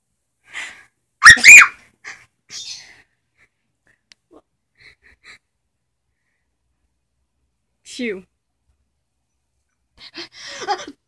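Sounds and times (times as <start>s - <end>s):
high squeaky animal calls: 1.2s - 1.8s.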